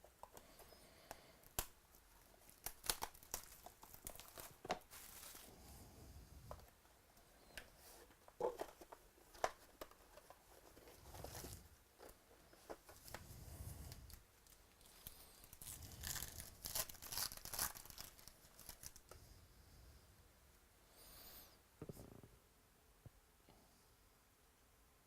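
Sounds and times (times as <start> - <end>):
wrappers crinkling: 1.5 - 5.5, 14.1 - 19.0
card pack wrappers tearing: 2.4 - 5.5, 14.4 - 19.0.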